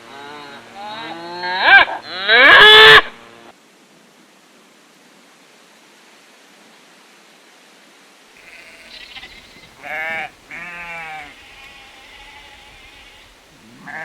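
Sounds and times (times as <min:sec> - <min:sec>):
sheep or goat bleating: 0:00.0 - 0:03.0, 0:08.4 - 0:14.0
low background hiss: 0:00.0 - 0:14.0.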